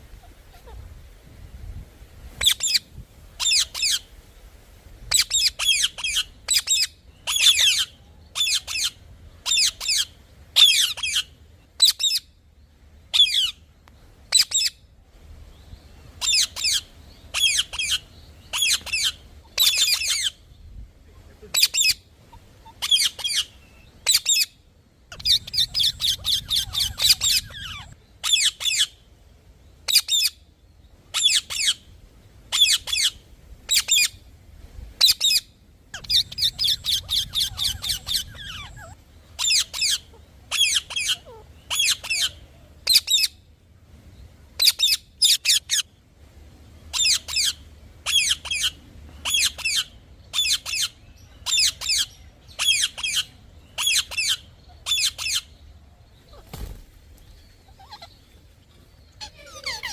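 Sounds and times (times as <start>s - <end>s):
parrot squawking: 0.2s - 0.8s, 5.1s - 11.2s, 21.5s - 24.5s, 25.1s - 28.9s, 36.0s - 43.3s, 46.9s - 55.5s, 57.7s - 58.2s, 59.2s - 59.9s.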